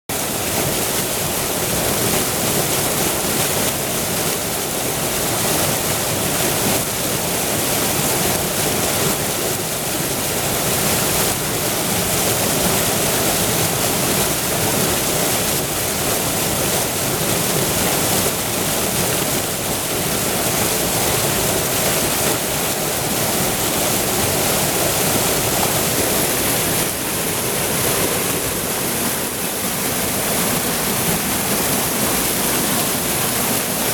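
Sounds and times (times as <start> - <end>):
water pouring over waterfall: 0.1 - 33.9.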